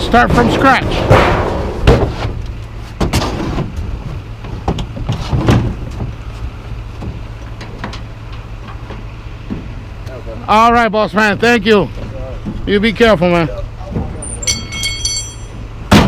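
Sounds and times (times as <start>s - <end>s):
vehicle engine idling: 0.0s - 16.0s.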